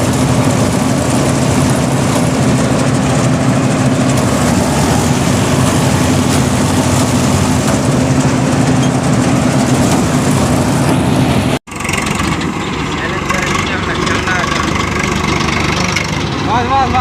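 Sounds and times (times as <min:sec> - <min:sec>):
harvester engine running: 0:00.0 - 0:17.0.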